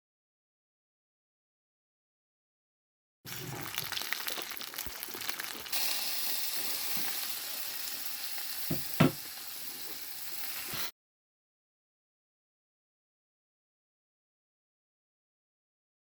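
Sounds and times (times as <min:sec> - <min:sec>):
food sizzling in a frying pan: 0:03.3 - 0:10.9
utensil knocking on pan: 0:08.7 - 0:09.3.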